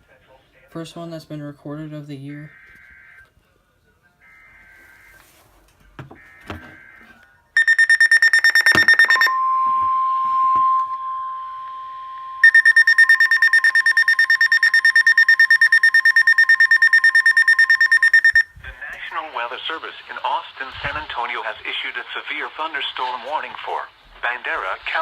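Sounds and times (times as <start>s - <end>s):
digital data bursts: 7.6s - 9.3s, 12.4s - 18.5s
rapid loud alarm beeping: 7.6s - 18.5s
steady warning tone: 7.6s - 18.5s.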